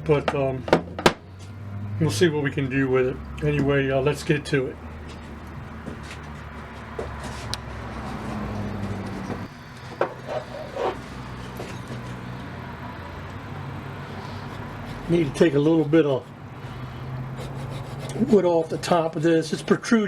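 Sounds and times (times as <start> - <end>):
tools knocking on bench: 0.2 - 1.2.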